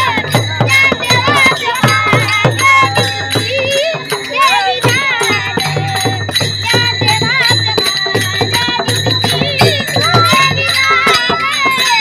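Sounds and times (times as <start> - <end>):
boy singing devotional song: 0.0 - 12.0
hand cymbals ringing: 0.0 - 12.0.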